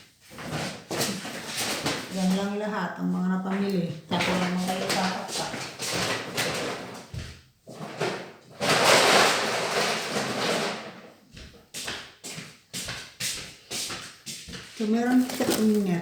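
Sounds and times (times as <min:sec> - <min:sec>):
noisy rustling: 0:14.8 - 0:16.0
packages set down with thumps: 0:15.1 - 0:16.0.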